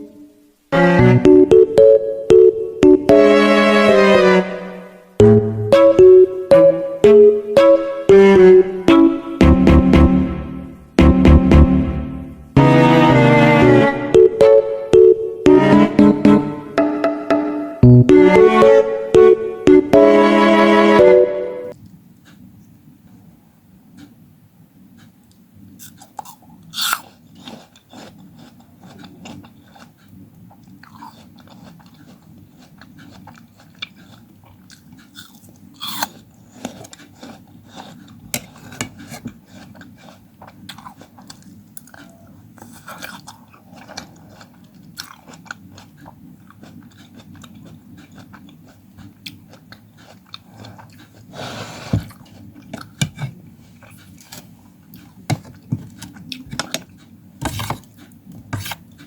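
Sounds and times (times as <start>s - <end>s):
chewing crunchy fruit: 25.0s - 59.0s.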